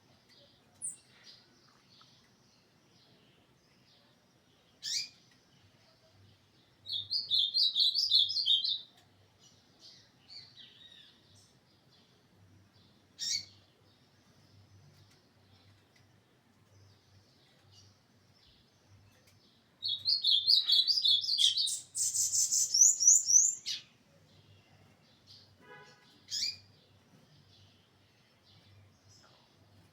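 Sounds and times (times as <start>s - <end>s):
bird singing rapid high notes: 20.1s - 23.8s.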